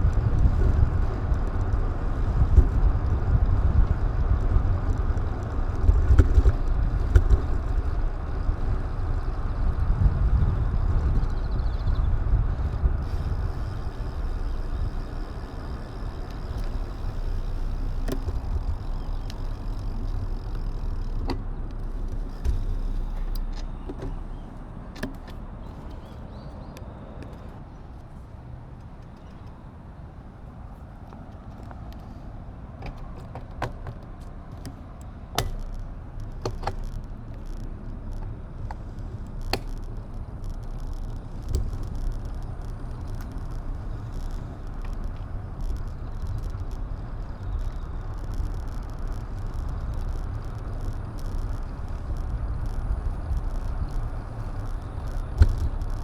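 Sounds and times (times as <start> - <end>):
wind on microphone: 0.0 - 24.6
sharp clicks and knocks from bumps: 0.0 - 29.7, 30.9 - 56.0
road rumble: 0.0 - 56.0.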